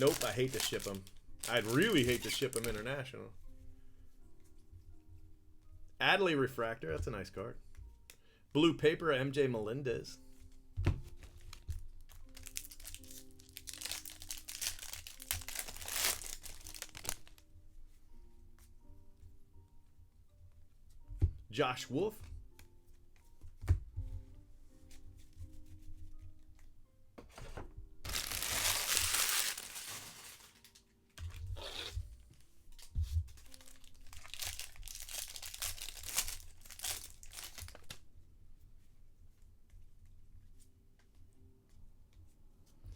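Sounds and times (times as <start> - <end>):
cards being handled: 0.0 - 2.9, 10.8 - 17.4, 28.1 - 38.0
wrapper crinkling and tearing: 0.0 - 3.0, 11.2 - 17.4, 28.1 - 32.1, 32.8 - 38.0
soft background music: 0.0 - 42.9.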